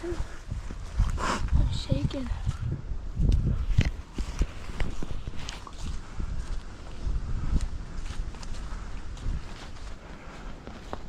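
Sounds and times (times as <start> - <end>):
footsteps crunching on dry ground: 3.1 - 11.0.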